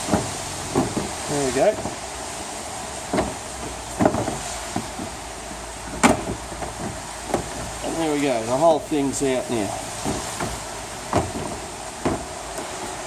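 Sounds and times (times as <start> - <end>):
plastic knocks and clunks: 0.0 - 2.0, 3.1 - 5.2, 5.8 - 7.8, 10.0 - 13.0.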